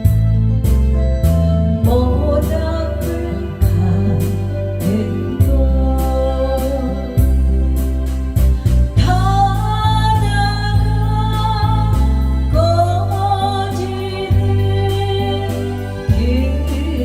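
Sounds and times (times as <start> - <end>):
backing track with bass and drums: 0.0 - 17.0
person singing a ballad: 0.0 - 17.0.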